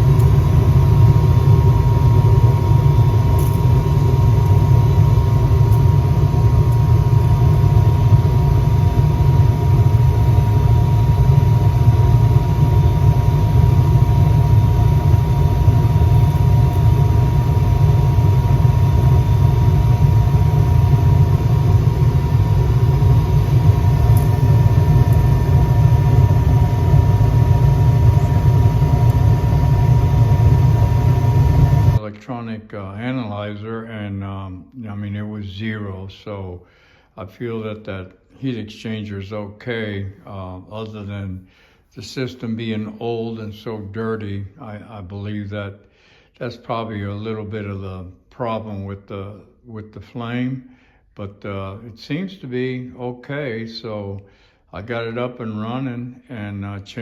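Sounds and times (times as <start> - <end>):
furnace rumbling: 0.0 - 32.0
thin steady whine: 0.0 - 32.0.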